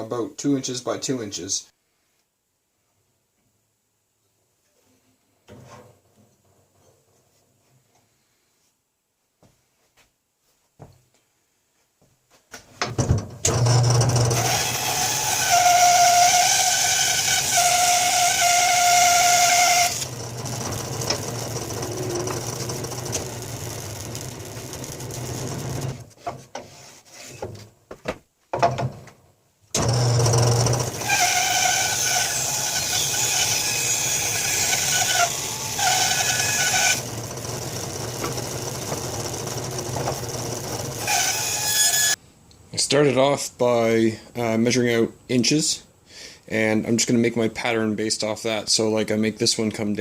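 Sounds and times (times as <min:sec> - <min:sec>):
power tool whining cutting wood: 0:13.5 - 0:26.0, 0:29.8 - 0:42.2.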